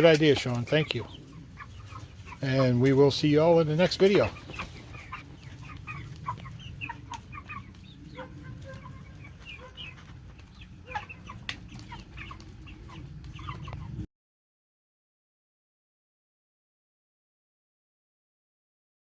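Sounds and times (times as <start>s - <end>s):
chicks peeping and clucking: 0.0s - 14.1s.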